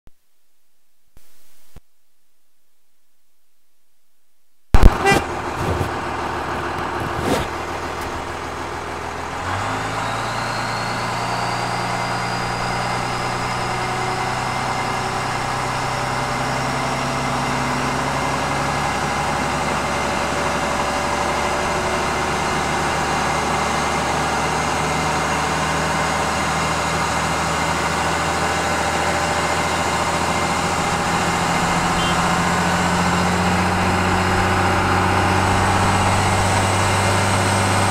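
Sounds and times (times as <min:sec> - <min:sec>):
diesel engine running: 0:04.8 - 0:37.9
high turbo whistle: 0:09.8 - 0:14.0, 0:31.2 - 0:33.5.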